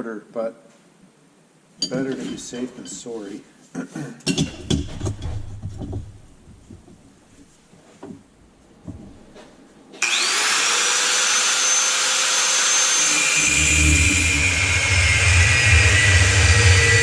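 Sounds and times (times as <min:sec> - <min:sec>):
power tool motor whining: 0:10.0 - 0:17.0
tool cutting metal tube: 0:10.0 - 0:17.0.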